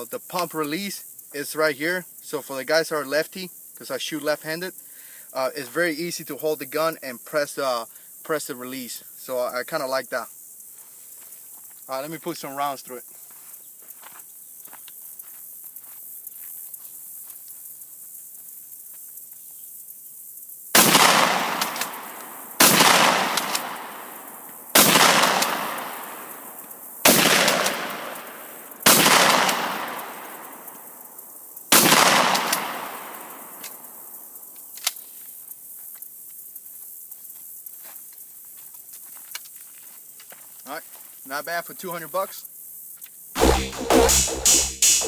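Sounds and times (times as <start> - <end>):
shotgun blasts with echo: 20.8 - 24.1, 24.8 - 26.3, 27.1 - 30.7, 31.8 - 33.7.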